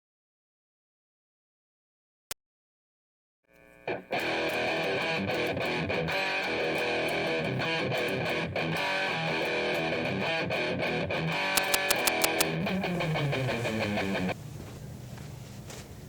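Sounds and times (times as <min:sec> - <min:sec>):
strummed electric guitar music: 0:03.9 - 0:14.4.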